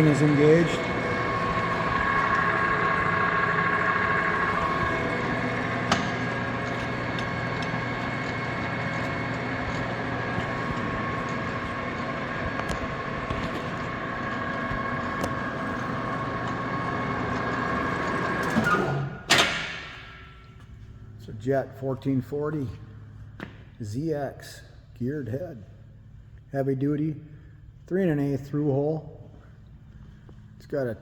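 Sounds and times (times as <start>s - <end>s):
lathe gear whine: 0.0s - 20.3s
low hum: 0.0s - 21.9s.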